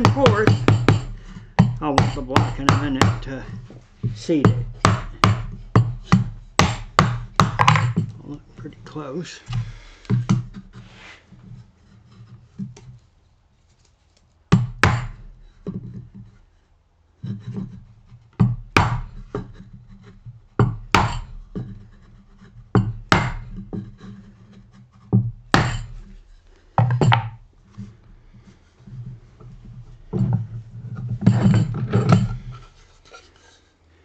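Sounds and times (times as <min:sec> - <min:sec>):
mallet knocking wood: 0:00.0 - 0:03.4, 0:04.1 - 0:08.2, 0:14.5 - 0:15.2, 0:18.4 - 0:19.2, 0:20.6 - 0:21.4, 0:22.8 - 0:23.6, 0:25.2 - 0:26.0, 0:26.8 - 0:27.4.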